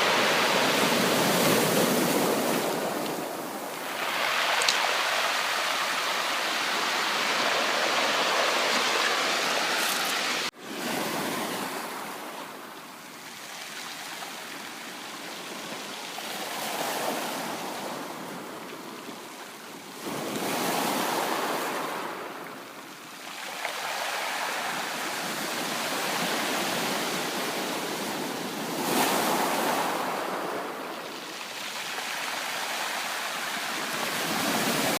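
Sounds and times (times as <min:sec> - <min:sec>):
sea waves breaking on shore: 0:00.0 - 0:18.6, 0:19.9 - 0:35.0.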